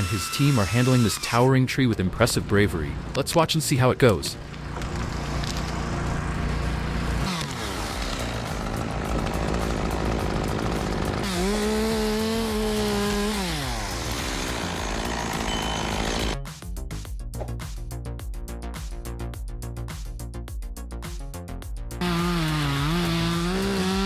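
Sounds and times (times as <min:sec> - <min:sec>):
chainsaw revving: 0:07.1 - 0:16.4, 0:22.0 - 0:24.0.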